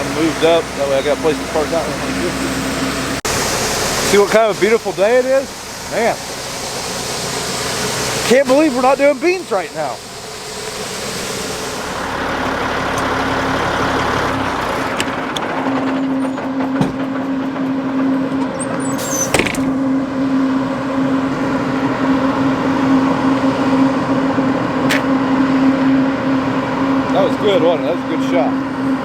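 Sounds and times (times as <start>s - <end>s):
steady drone: 0.0s - 14.5s
vehicle running: 0.0s - 29.0s.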